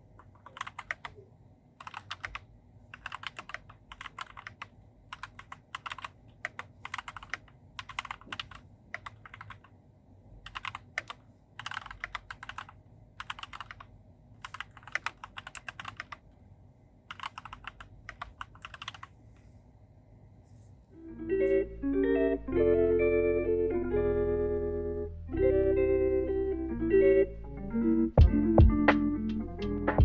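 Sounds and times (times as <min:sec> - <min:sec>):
mechanical keyboard typing: 0:00.2 - 0:01.2, 0:01.8 - 0:09.7, 0:10.4 - 0:16.2, 0:17.1 - 0:19.1.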